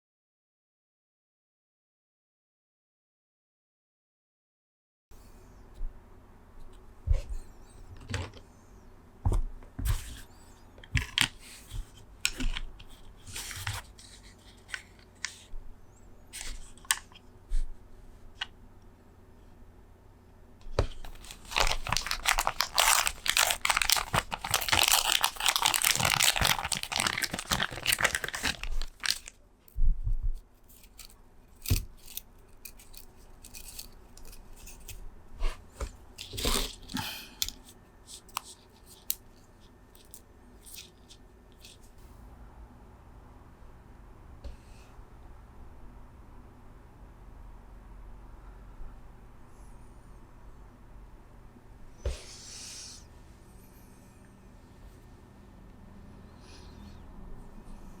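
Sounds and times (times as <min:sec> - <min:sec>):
packaging crinkling and tearing: 0:21.0 - 0:29.4, 0:30.7 - 0:35.0, 0:36.2 - 0:39.3, 0:40.0 - 0:41.8.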